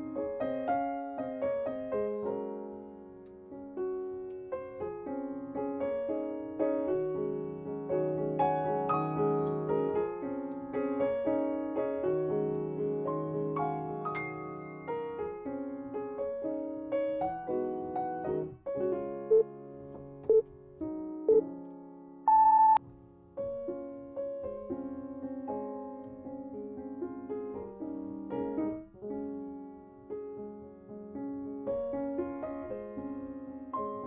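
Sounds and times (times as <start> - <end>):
calm piano music: 0.0 - 34.0
interval timer beeps: 22.3 - 22.8.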